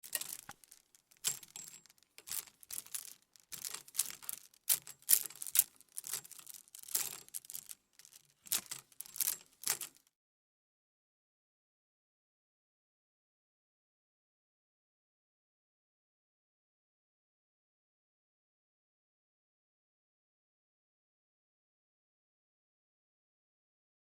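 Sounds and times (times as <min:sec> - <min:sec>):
plastic hangers clattering: 0:00.0 - 0:10.0.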